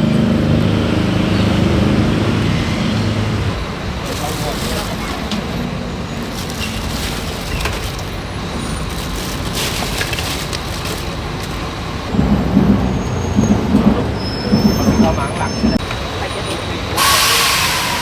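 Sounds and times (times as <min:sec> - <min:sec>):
road traffic noise: 0:00.0 - 0:18.0
low pulsing sound: 0:12.1 - 0:15.8.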